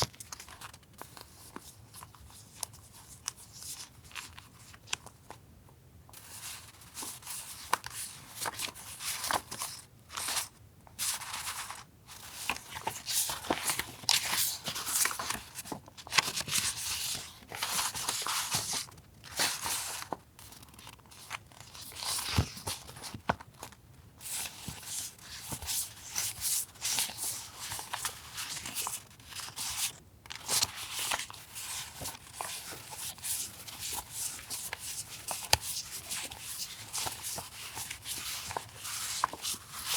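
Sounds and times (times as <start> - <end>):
paper rustling and crinkling: 0.0 - 5.4, 6.2 - 39.9.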